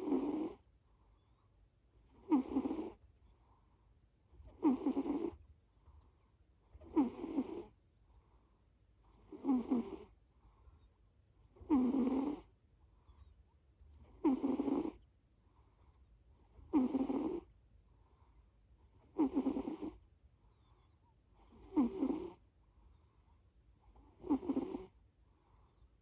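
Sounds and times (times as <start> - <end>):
pet snoring: 0.0 - 0.6, 2.1 - 3.0, 4.4 - 5.5, 6.7 - 7.8, 9.0 - 10.2, 11.5 - 12.5, 14.0 - 15.0, 16.5 - 17.5, 18.9 - 23.1, 23.8 - 25.8.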